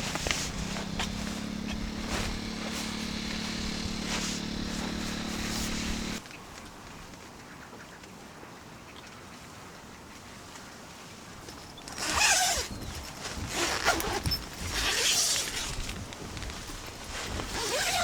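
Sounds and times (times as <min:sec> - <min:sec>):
boat motor humming: 0:00.0 - 0:06.2
footsteps: 0:00.0 - 0:06.2
outdoor ambience: 0:00.0 - 0:09.2.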